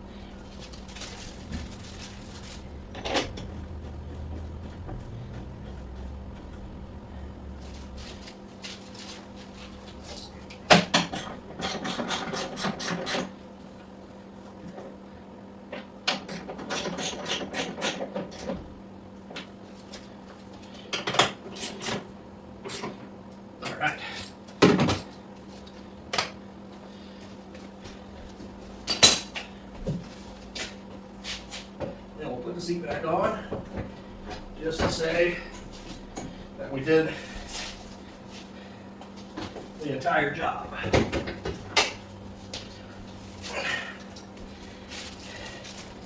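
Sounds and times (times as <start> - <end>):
steady low hum: 0.0 - 15.6, 22.2 - 46.0
clicking and rattling: 0.2 - 8.4.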